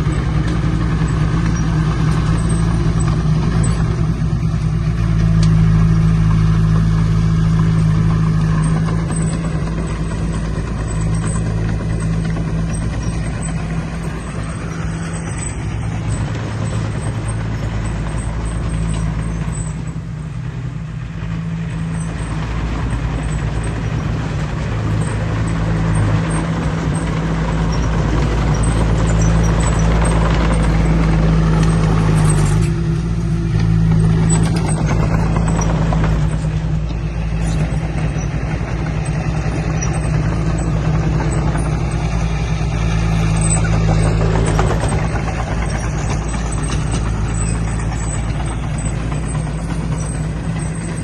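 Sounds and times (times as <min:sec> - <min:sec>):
heavy diesel engine running: 0:00.0 - 0:51.0.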